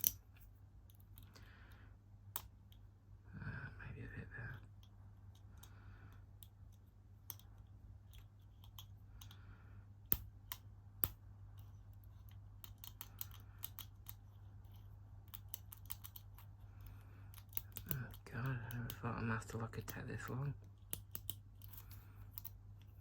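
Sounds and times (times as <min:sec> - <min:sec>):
lock picks clicking in padlock: 0:15.3 - 0:16.5.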